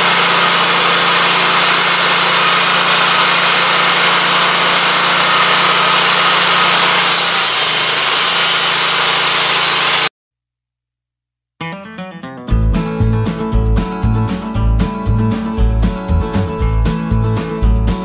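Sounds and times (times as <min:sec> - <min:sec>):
band sawmill running: 0:00.0 - 0:10.1, 0:13.0 - 0:18.0
guitar music: 0:11.6 - 0:18.0.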